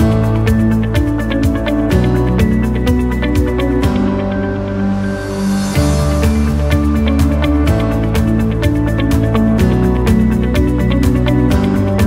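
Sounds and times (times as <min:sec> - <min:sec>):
held chords: 0:00.0 - 0:12.0.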